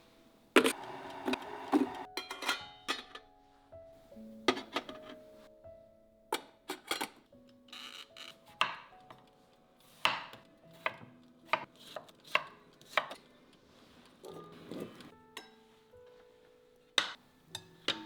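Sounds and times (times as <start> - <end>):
soft background music: 0.0 - 18.0
knife chopping on cutting board: 9.9 - 13.2.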